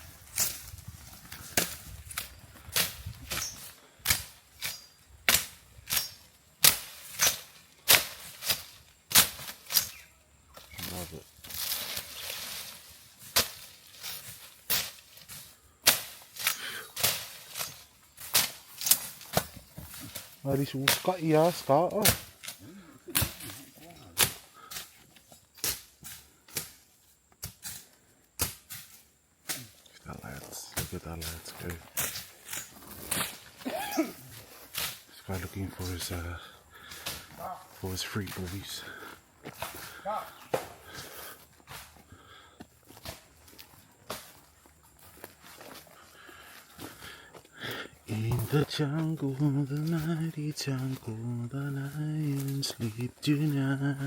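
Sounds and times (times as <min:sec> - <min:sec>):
sharp cracking strikes: 0:02.8 - 0:09.9.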